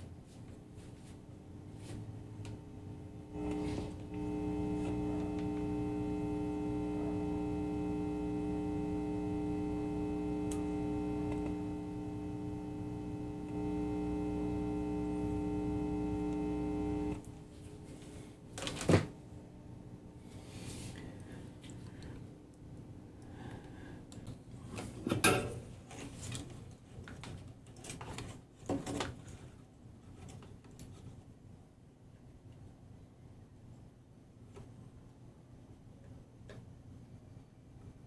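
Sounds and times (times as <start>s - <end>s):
loudspeaker low electrical buzz: 0.7s - 23.9s.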